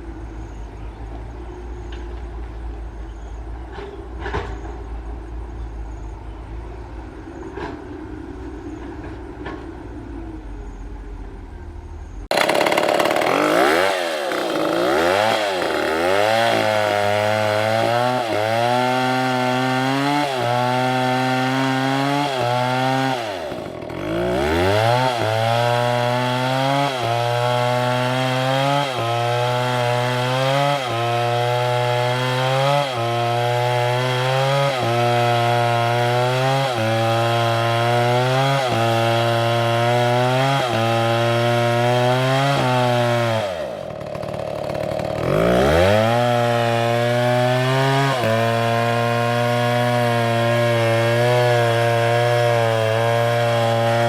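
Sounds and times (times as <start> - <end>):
chainsaw cutting wood: 12.3 - 54.0.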